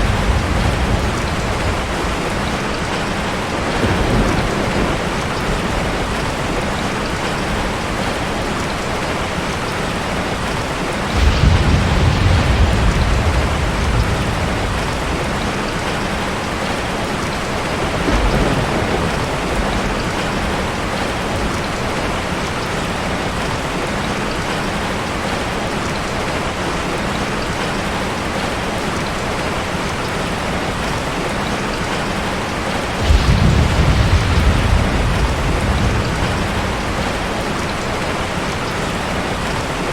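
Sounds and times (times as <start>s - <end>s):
low rumble of thunder: 0.0s - 22.6s, 32.6s - 39.9s
steady rain falling: 0.0s - 39.9s.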